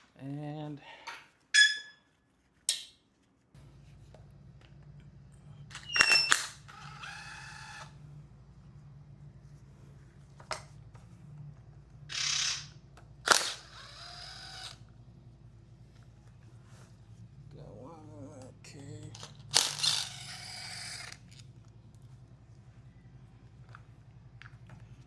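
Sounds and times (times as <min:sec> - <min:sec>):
steady low hum: 0:03.6 - 0:25.0
metal parts and tools clinking: 0:19.1 - 0:22.1.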